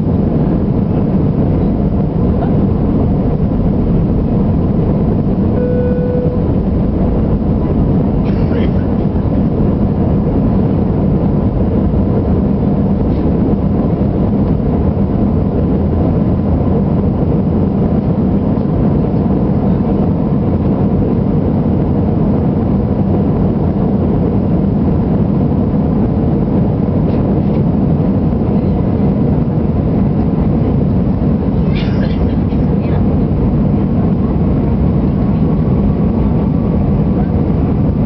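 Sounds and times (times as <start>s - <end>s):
jet engines droning: 0.0s - 38.0s
faint steady tones: 5.5s - 7.4s.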